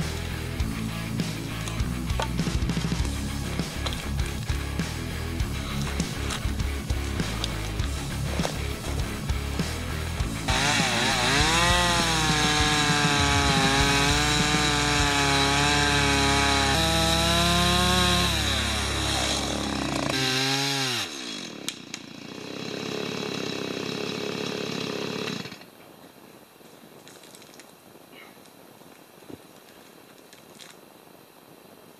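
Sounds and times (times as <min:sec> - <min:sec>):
chainsaw cutting into tree: 0:01.7 - 0:25.7.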